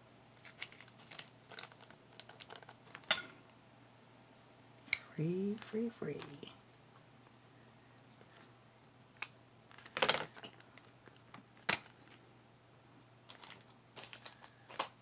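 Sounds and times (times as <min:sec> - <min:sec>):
faint low hum: 0:00.0 - 0:15.0
small objects clicking: 0:00.4 - 0:03.3.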